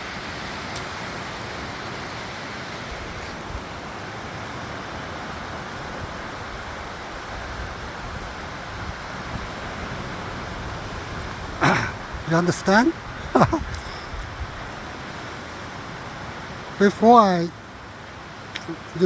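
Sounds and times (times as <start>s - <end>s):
strong wind blowing: 6.1s - 15.0s.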